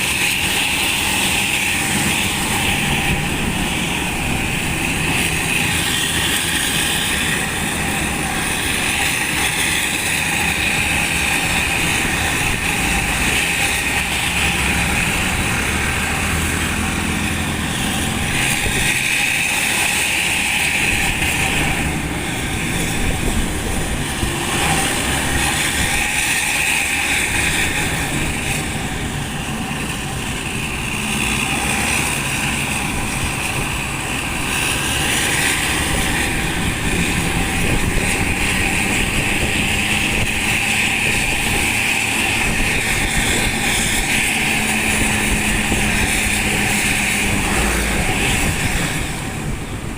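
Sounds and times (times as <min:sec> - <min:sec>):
bus diesel engine with loud exhaust: 0:00.0 - 0:49.9.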